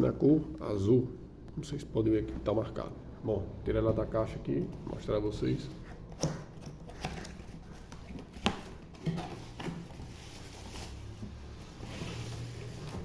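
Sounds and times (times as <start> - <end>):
packing material rustling: 6.6 - 13.0.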